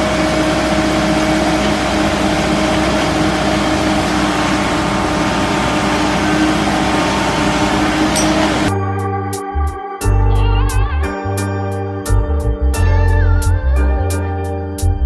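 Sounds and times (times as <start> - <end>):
drilling rig engine running: 0.0 - 8.7.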